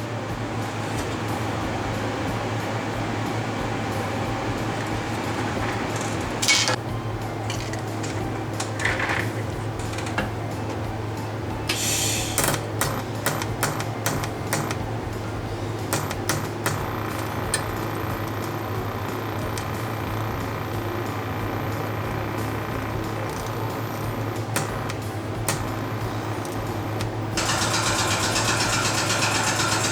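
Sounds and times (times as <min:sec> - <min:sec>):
noisy rushes: 0:00.0 - 0:12.3
steady low hum: 0:00.0 - 0:29.9.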